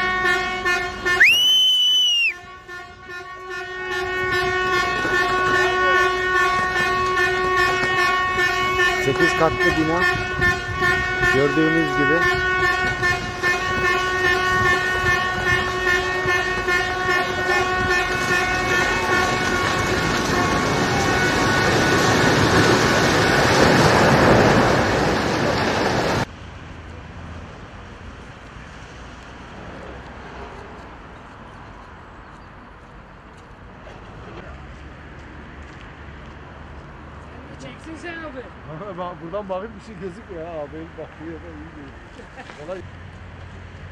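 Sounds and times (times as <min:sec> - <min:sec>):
vehicle horn long blast: 0:00.0 - 0:22.0.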